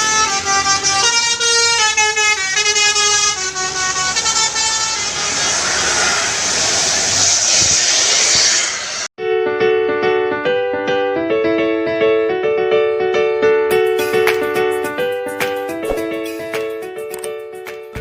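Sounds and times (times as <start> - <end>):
bus air horn playing a melody: 0.0 - 6.0.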